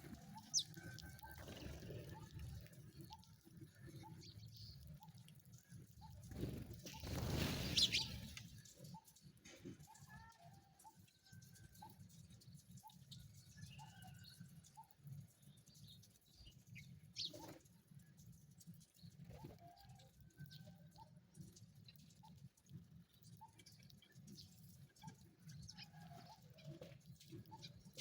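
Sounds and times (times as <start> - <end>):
bird chirps and calls: 0.3 - 2.3, 6.9 - 8.4, 16.8 - 17.6.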